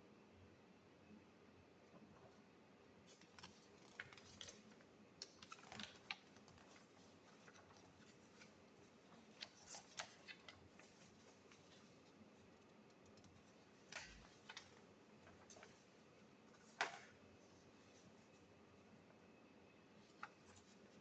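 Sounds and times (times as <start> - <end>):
low room hiss: 0.0 - 21.0
faint clicks and taps: 3.1 - 15.8.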